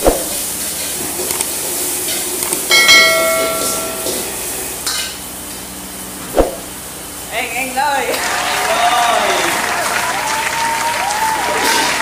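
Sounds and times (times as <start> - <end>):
metal clang against wok: 2.7 - 5.2.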